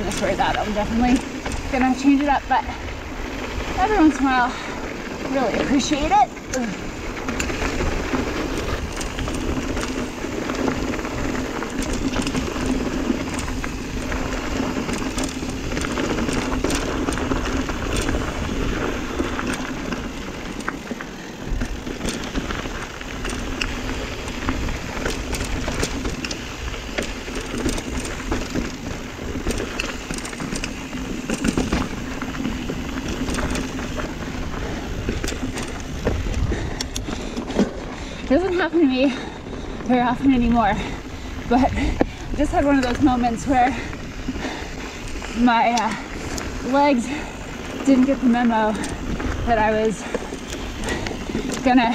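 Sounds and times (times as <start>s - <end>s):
scattered clicks: 0.0s - 2.5s
bike rattling over rocks: 0.0s - 51.9s
steady rush of noise: 0.0s - 51.9s
tyres crunching on gravel: 0.0s - 51.9s.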